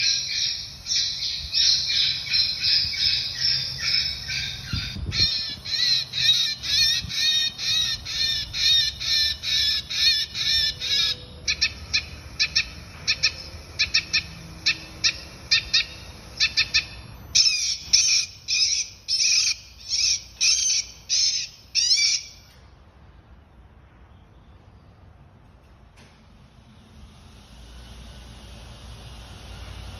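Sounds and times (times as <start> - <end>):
electronic squawking chirps: 0.0 - 22.5.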